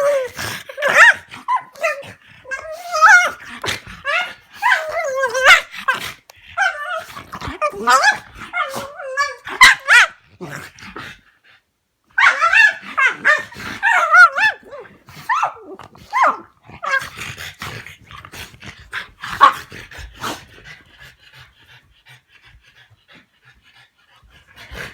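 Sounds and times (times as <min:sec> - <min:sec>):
dogs whining and yelping: 0:00.0 - 0:10.2, 0:12.1 - 0:17.1.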